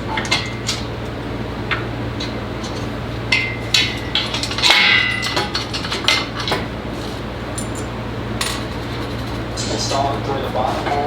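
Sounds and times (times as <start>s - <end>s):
steady low hum: 0.0s - 11.0s
metal parts and tools clanking: 2.7s - 10.1s.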